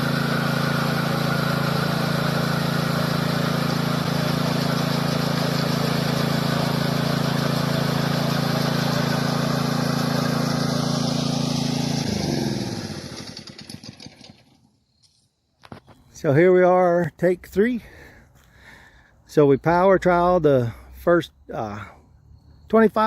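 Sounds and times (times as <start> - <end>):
small gasoline engine running: 0.0 - 14.8.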